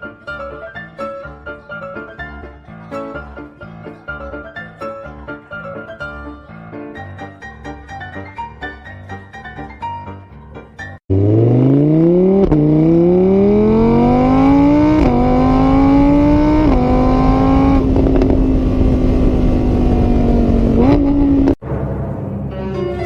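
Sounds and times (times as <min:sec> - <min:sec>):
engine accelerating through gears: 0:11.1 - 0:21.6.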